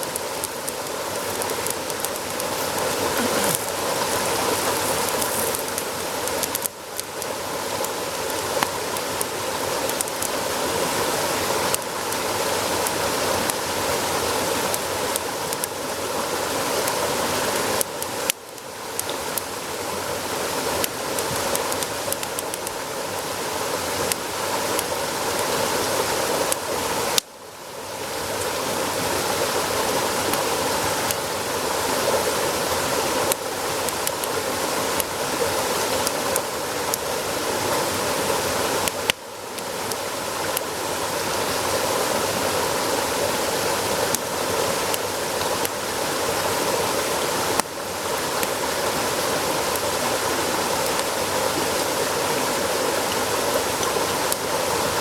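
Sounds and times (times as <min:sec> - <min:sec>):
meat sizzling on a grill: 0:01.3 - 0:06.5.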